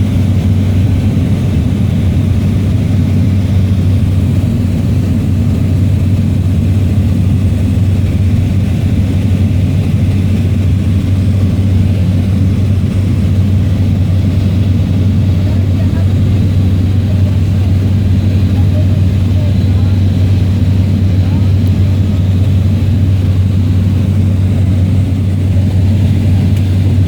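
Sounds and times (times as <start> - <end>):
propeller aircraft engine drone: 0.0 - 27.0.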